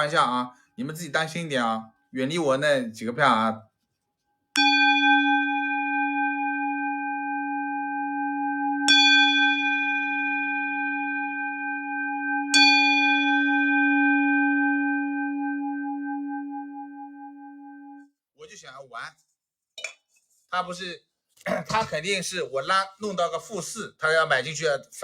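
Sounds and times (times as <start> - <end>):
metal singing bowl ringing: 4.6 - 18.0.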